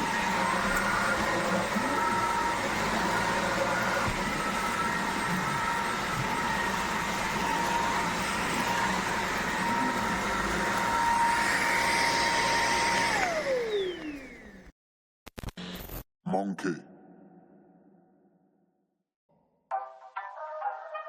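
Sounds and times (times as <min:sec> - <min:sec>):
vacuum cleaner motor whine: 0:00.0 - 0:14.7.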